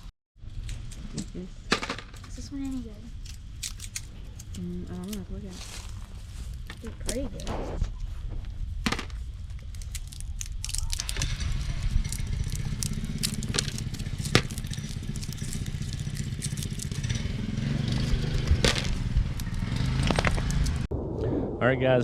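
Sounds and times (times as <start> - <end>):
low rumble: 3.0 - 22.0
bean pods snapping open: 3.2 - 5.2, 9.5 - 17.2, 18.0 - 20.9.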